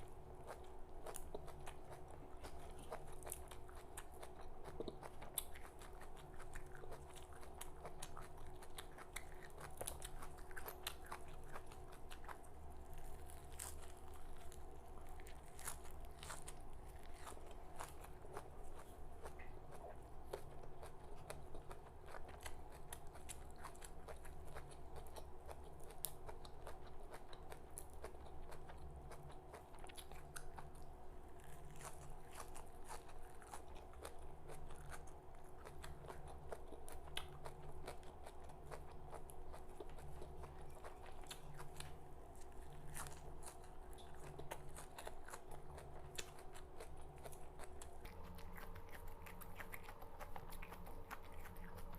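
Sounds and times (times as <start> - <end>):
chewing and crunching leaves: 0.0 - 51.9.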